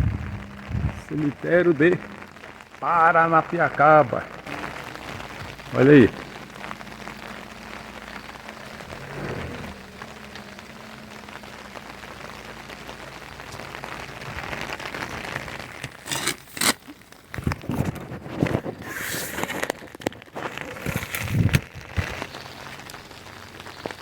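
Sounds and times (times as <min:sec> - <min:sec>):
steady rain falling: 0:00.0 - 0:24.0.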